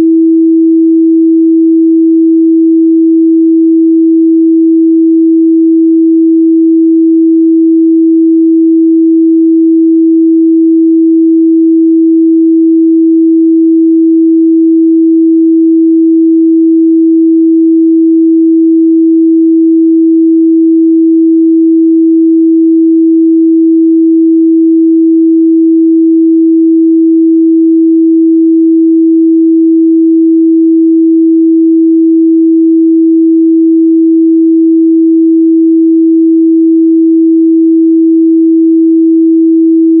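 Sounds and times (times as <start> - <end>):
sine-wave test tone: 0.0 - 40.0.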